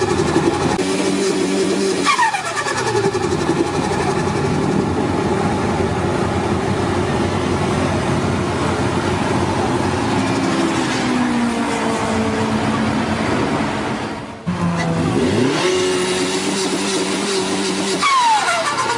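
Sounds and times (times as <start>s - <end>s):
car engine idling: 2.2s - 10.7s.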